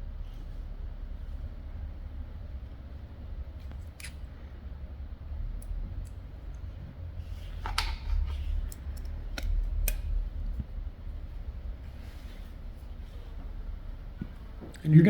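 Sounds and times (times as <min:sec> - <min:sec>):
steady low hum: 0:00.0 - 0:15.0
light metal clicks and taps: 0:07.6 - 0:10.1.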